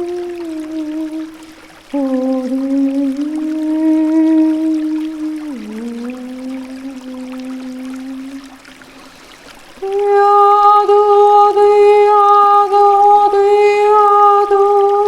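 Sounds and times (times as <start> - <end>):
woman singing long held note: 0.0 - 8.6, 9.8 - 15.0.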